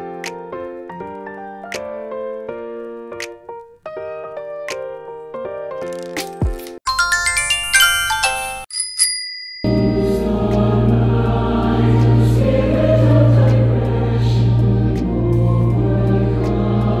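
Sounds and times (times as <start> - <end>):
rising keyboard notes: 6.9 - 8.7, 9.7 - 17.0
high chime-like pings: 6.9 - 10.2
choir-like voices: 9.7 - 17.0.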